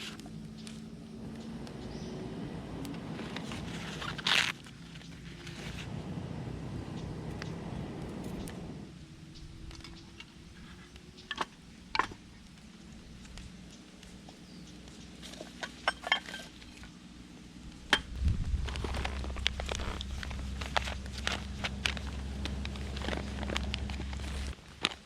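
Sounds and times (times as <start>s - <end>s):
camp dishes clinking: 15.2s - 16.9s
steady rustling: 17.8s - 24.6s.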